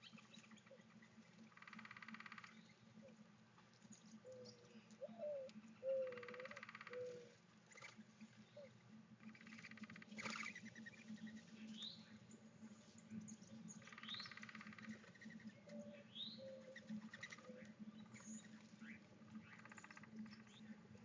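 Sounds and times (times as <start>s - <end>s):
small birds chirping: 0.0s - 21.0s
steady low hum: 0.0s - 21.0s
buzzy bird trill: 9.2s - 12.2s.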